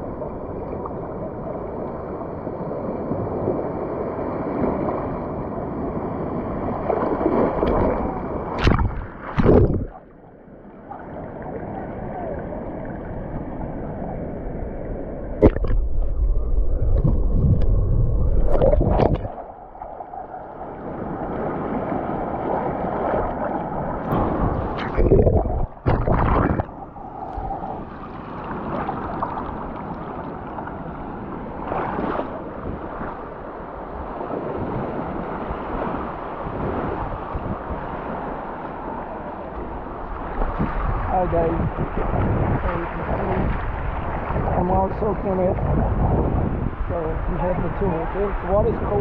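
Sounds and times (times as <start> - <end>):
ocean surf washing: 0.0 - 49.0
water splashes: 6.6 - 10.2, 10.8 - 33.3.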